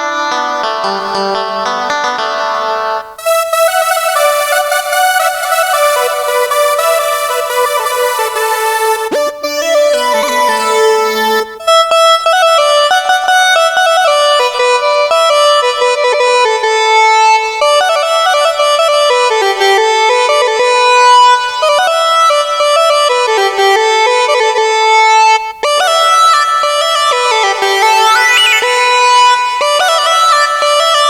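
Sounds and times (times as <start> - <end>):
reedy folk melody: 0.0 - 31.0.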